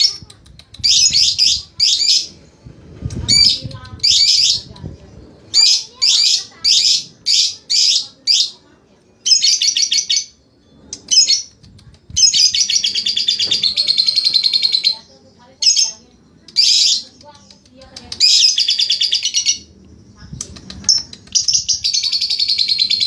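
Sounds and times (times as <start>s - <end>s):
lovebird chattering: 0.0s - 2.4s, 3.1s - 4.8s, 9.2s - 23.0s.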